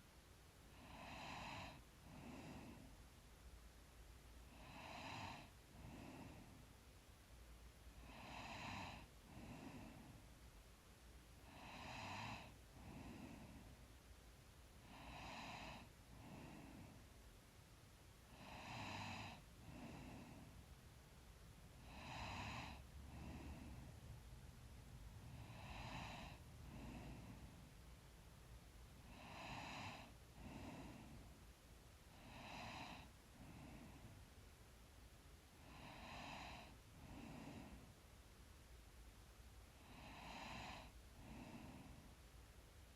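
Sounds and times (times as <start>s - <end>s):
person breathing in sleep: 0.7s - 3.0s, 4.4s - 6.7s, 7.9s - 10.3s, 11.4s - 14.1s, 14.8s - 17.2s, 18.3s - 20.8s, 21.7s - 24.4s, 25.1s - 27.9s, 28.9s - 34.4s, 35.5s - 38.1s, 39.8s - 42.3s.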